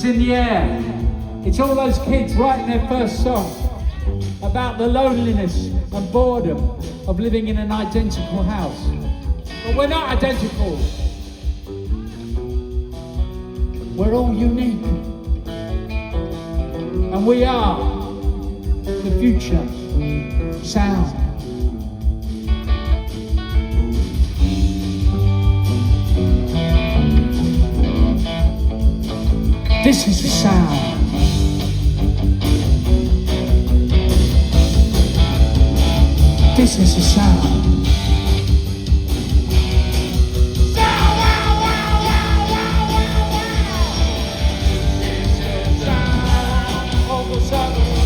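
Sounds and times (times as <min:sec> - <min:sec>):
electric guitar lines: 0:00.0 - 0:48.0
punk rock band playing: 0:00.0 - 0:48.0
steady drum beat: 0:00.0 - 0:48.0.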